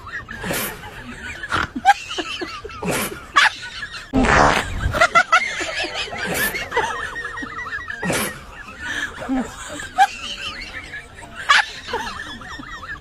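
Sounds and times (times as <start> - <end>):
people snickering and laughing: 0.0 - 13.0
prank fart sound: 4.1 - 5.0.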